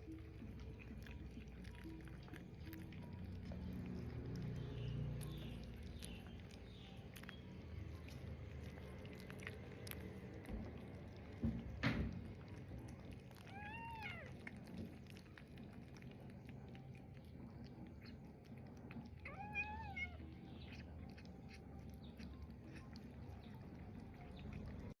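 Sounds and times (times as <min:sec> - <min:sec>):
kitten meowing: 0:13.3 - 0:14.4, 0:19.2 - 0:20.8.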